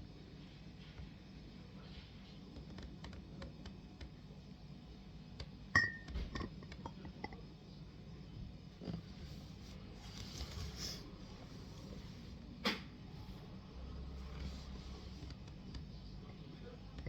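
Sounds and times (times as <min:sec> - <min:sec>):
glass clink: 0:05.8 - 0:07.4.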